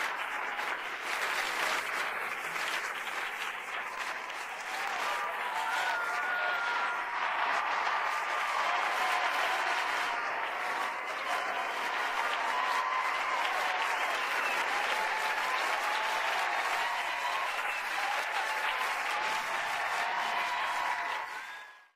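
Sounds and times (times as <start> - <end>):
audience applauding and cheering: 0.0 - 21.9
voices whooping: 4.6 - 21.7.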